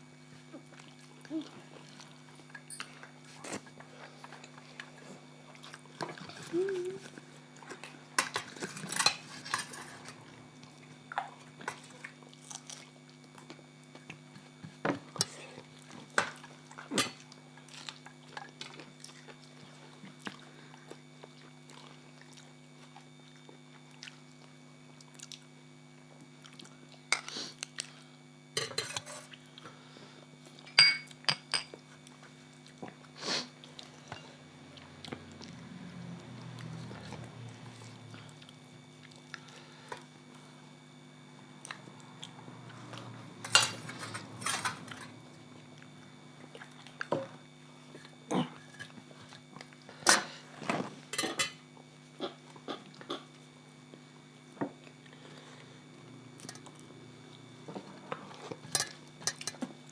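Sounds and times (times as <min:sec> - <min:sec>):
steady low hum: 0:00.0 - 0:59.9
utensils and dishes clinking: 0:08.2 - 0:10.2, 0:28.6 - 0:29.3, 0:30.7 - 0:31.7, 0:43.4 - 0:45.2, 0:51.1 - 0:51.6, 0:58.6 - 0:59.6.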